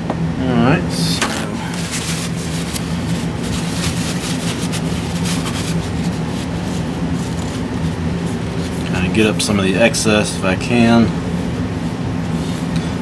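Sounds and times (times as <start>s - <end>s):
low machine hum: 0.0s - 13.0s
brush scratching metal fins: 1.2s - 9.5s.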